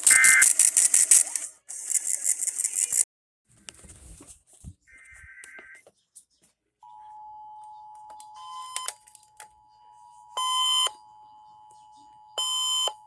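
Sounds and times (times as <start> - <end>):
two-tone attention signal: 0.0 - 0.6
clicks: 0.0 - 3.0
raspy digital data tones: 0.0 - 3.0.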